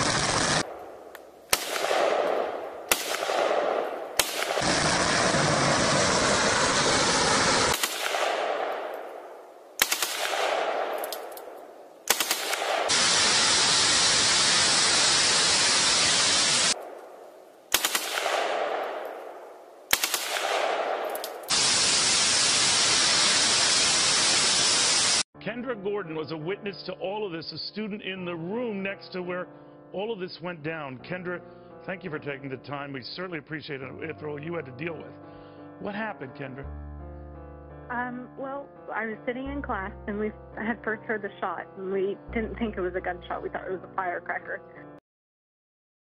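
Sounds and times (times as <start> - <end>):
firecrackers crackling: 0.0 - 25.2
gunshots echoing: 0.0 - 25.2.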